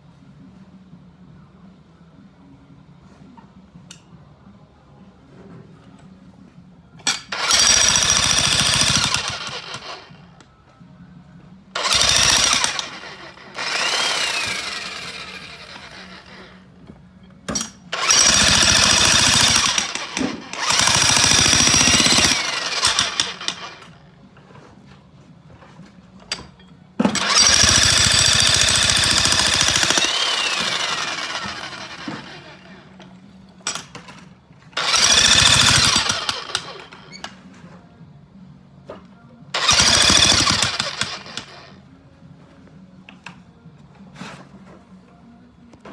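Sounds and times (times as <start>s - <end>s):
jackhammer hammering: 7.3s - 10.2s, 11.8s - 16.6s, 17.6s - 24.0s, 27.0s - 32.7s, 34.8s - 37.1s, 39.6s - 41.8s.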